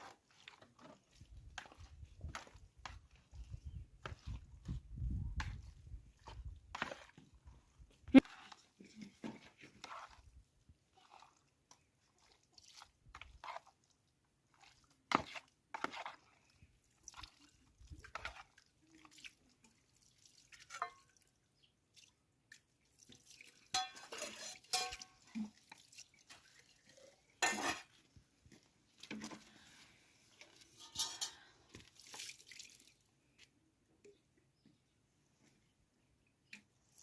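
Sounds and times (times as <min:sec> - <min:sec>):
dishes and utensils clinking: 0:23.7 - 0:25.2, 0:27.4 - 0:27.9, 0:30.8 - 0:31.5.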